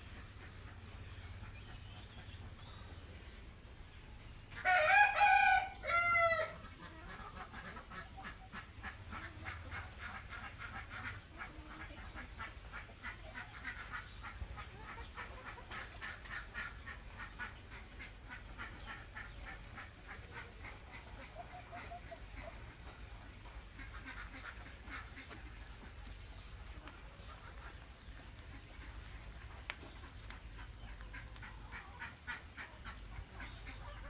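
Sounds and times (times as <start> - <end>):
rooster crowing: 4.6 - 6.6.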